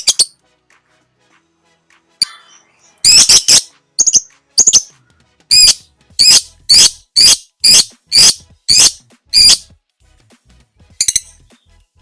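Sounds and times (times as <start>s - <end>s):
lovebird shrill calls: 3.0s - 4.9s, 5.5s - 9.6s.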